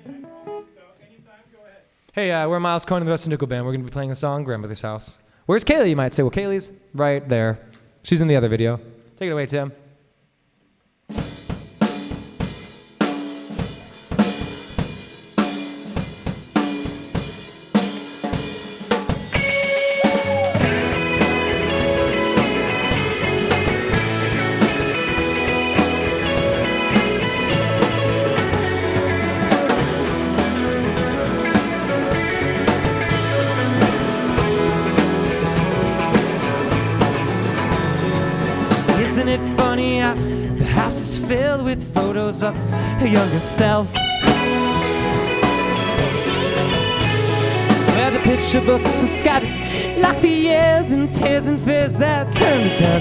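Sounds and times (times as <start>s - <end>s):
band playing: 0.0s - 0.9s, 14.2s - 53.0s
drum kit beat: 11.1s - 53.0s.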